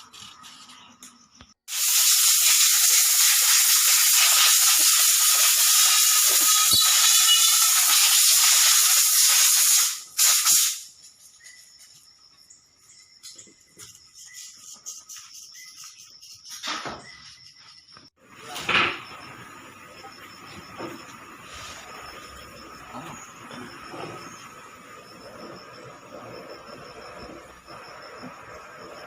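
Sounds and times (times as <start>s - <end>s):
pressurised jet hissing: 1.7s - 10.9s.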